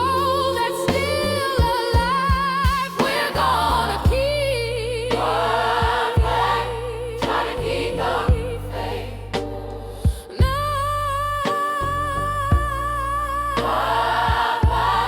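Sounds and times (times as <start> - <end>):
choir singing: 0.0 - 10.0, 13.6 - 15.0
bass line: 0.0 - 15.0
drum hits: 14.3 - 15.0.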